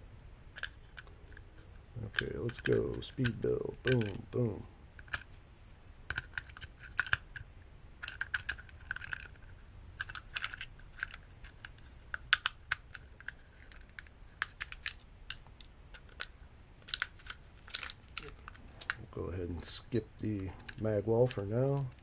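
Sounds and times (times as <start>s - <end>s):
small parts clicking and tapping: 0.5s - 5.3s, 6.1s - 22.0s.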